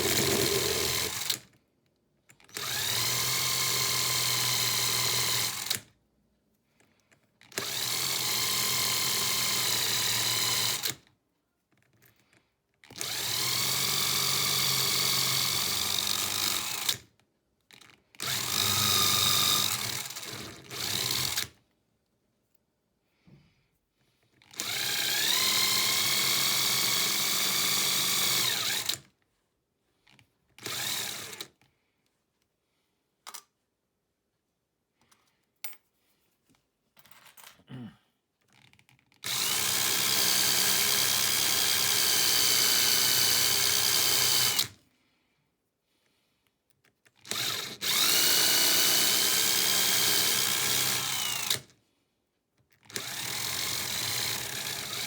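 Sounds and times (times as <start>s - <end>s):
power tool whining: 0.0s - 1.4s, 18.2s - 21.5s, 24.6s - 29.0s, 39.2s - 44.7s, 47.3s - 51.6s, 52.9s - 55.0s.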